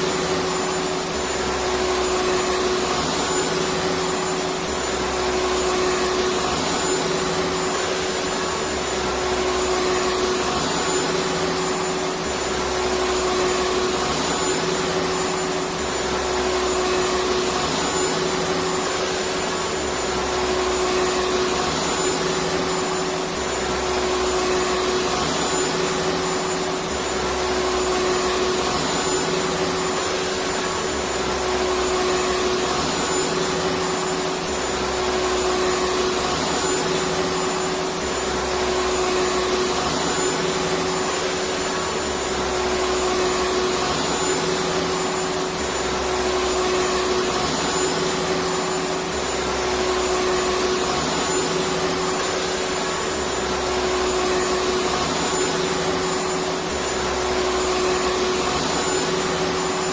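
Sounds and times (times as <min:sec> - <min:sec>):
vacuum cleaner running: 0:00.0 - 0:59.9.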